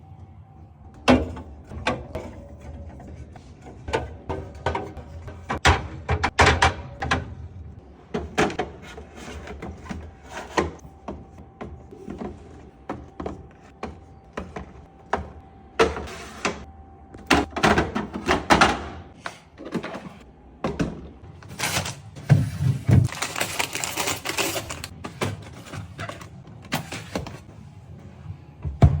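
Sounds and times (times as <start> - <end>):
food containers knocking and clattering: 1.1 - 7.4, 8.0 - 27.5
packages rustling: 21.4 - 27.3.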